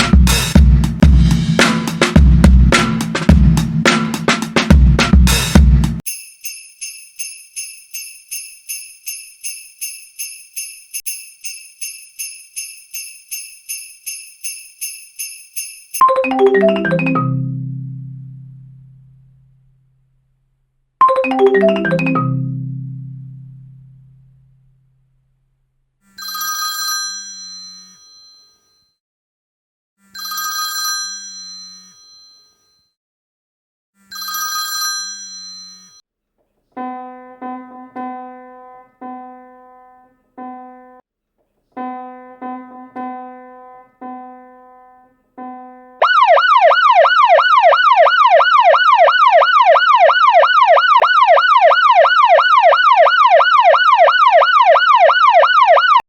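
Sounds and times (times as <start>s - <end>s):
bell-like chimes: 6.0s - 17.4s, 30.2s - 32.9s, 34.2s - 36.0s
electronic ringing tone: 21.0s - 22.8s
warbling emergency siren: 46.0s - 56.0s.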